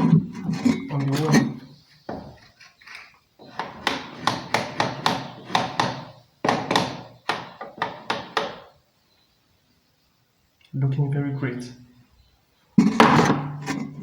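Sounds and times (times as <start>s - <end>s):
wall switch knocks: 3.6s - 8.7s.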